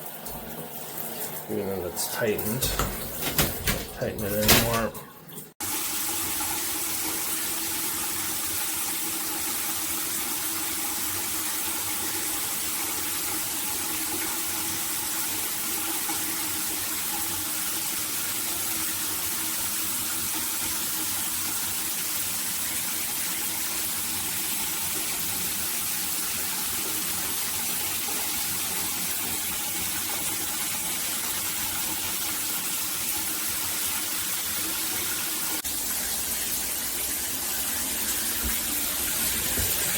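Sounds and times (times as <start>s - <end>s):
shower water spraying: 0.0s - 5.0s, 22.7s - 39.9s.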